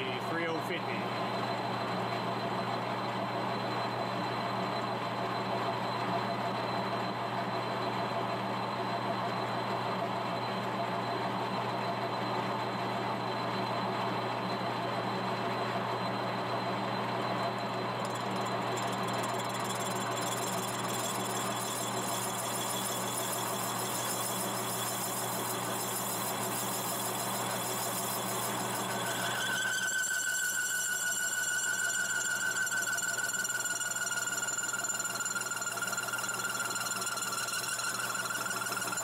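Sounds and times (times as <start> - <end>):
whistling tone: 16.9 - 39.0
lathe motor hum: 17.8 - 39.0
high-pitched squealing tones: 27.4 - 39.0.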